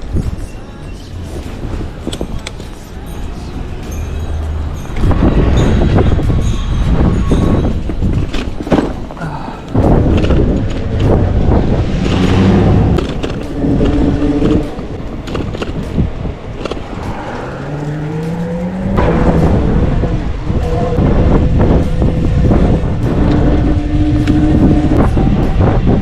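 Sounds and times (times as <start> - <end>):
road rumble: 0.0 - 26.0
wind buffeting microphone: 1.4 - 26.0
rattles and knocks: 4.9 - 11.3.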